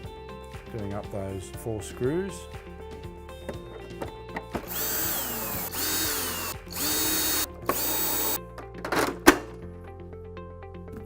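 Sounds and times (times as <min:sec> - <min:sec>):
cordless drill driving screws: 0:04.7 - 0:08.4.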